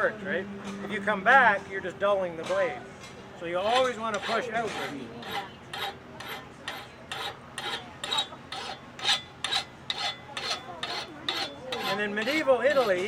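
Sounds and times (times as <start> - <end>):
hand file rasping across metal: 3.6 - 13.0.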